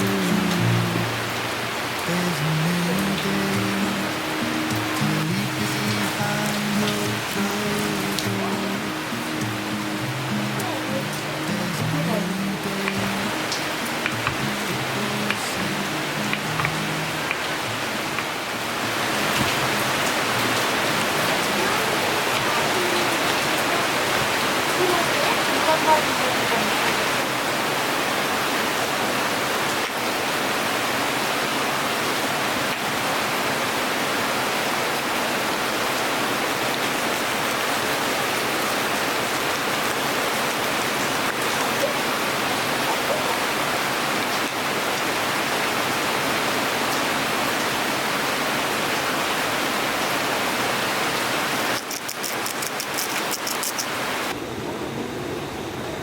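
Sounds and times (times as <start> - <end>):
heavy rain pouring: 0.0 - 56.0
high ticks: 51.7 - 54.0.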